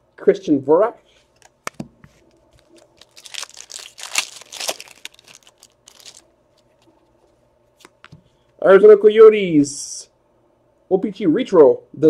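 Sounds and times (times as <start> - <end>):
plastic packaging crinkling: 1.4 - 6.9.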